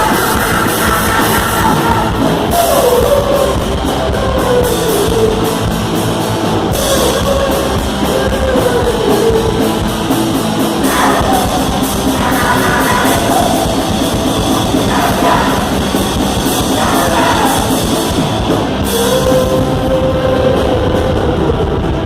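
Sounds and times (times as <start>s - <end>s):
distorted electric guitars: 0.0s - 22.0s
fast drum kit beat: 0.0s - 22.0s
gliding vocal line: 0.0s - 22.0s.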